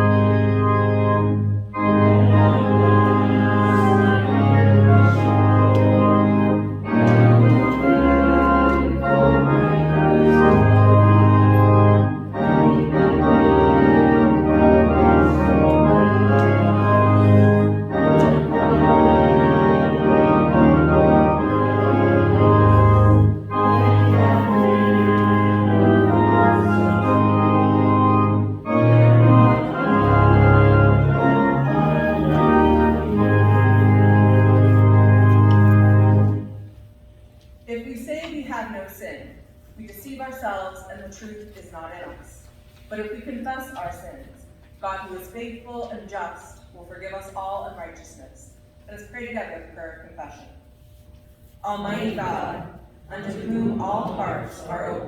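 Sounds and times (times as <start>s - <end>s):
church organ playing hymn: 0.0s - 37.2s, 50.7s - 55.0s.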